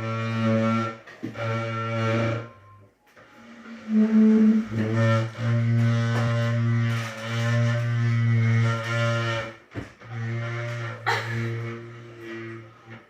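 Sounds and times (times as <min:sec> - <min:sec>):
chair creaking: 0:00.0 - 0:13.0.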